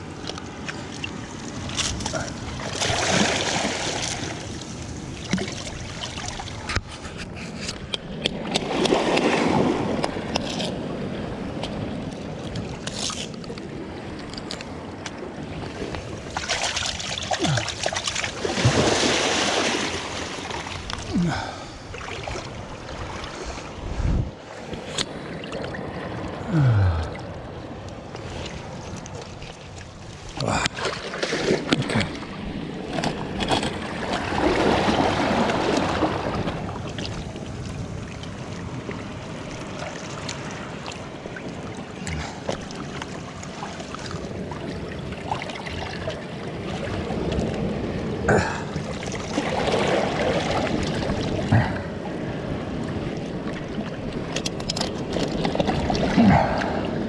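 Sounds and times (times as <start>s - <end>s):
sea water sloshing and splashing: 0.0s - 57.0s
wind noise: 22.6s - 24.4s.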